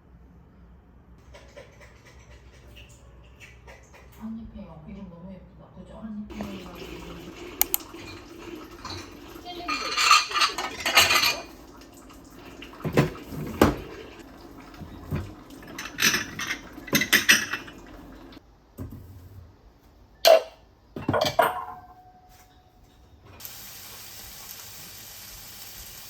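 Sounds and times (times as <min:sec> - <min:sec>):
cutlery clinking against dishes: 0:08.8 - 0:11.5, 0:15.7 - 0:17.8.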